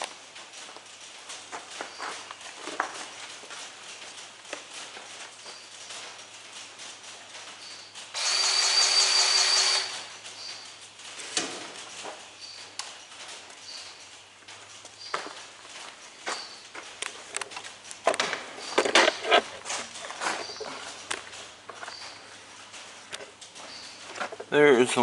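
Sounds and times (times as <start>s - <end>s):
grease gun motor whining: 8.2s - 10.1s.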